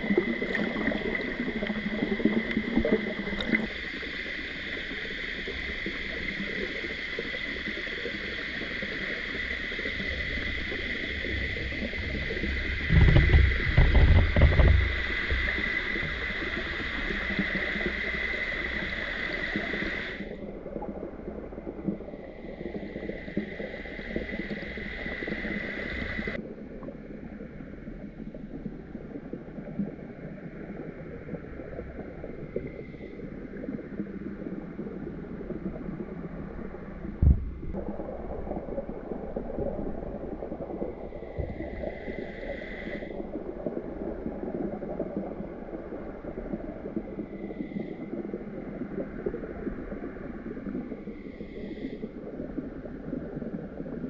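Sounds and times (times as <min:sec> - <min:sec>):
noisy wash: 0:00.0 - 0:54.0.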